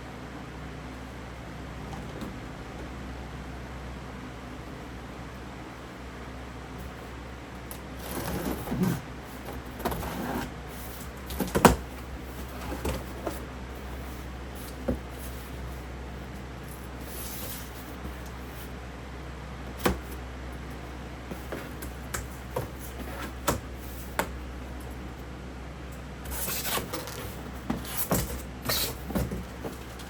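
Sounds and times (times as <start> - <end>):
steady low hum: 0.0 - 30.0
cardboard rustling and scraping: 8.0 - 15.9, 16.6 - 18.8, 21.2 - 24.5, 26.2 - 30.0.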